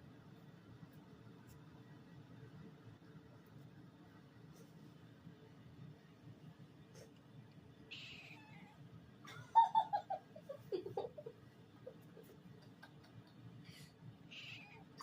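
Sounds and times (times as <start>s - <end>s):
cat chirping: 7.9s - 8.8s, 14.3s - 15.0s
cat meowing: 7.9s - 8.8s, 14.3s - 15.0s.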